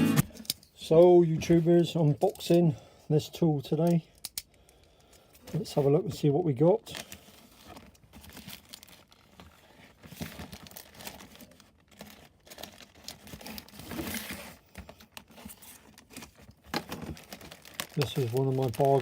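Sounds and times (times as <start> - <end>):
packaging crinkling and tearing: 6.8 - 19.0.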